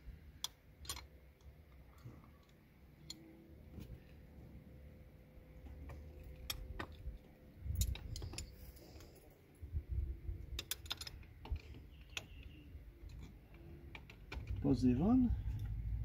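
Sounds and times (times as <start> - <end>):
metallic clicks and clinks: 0.4 - 1.1, 7.7 - 9.2, 10.5 - 14.6.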